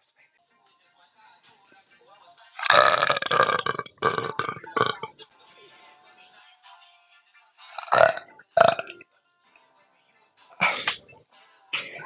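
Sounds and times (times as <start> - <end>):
faint background music: 0.0 - 12.0
loud burp: 2.6 - 5.2, 7.7 - 9.0.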